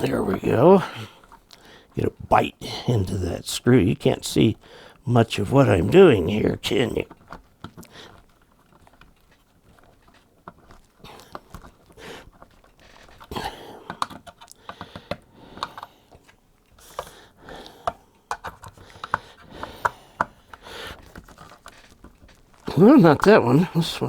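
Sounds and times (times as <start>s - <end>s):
wires being handled: 4.1s - 24.0s
small screwdriver clicking and scraping: 7.1s - 17.1s, 17.8s - 23.4s.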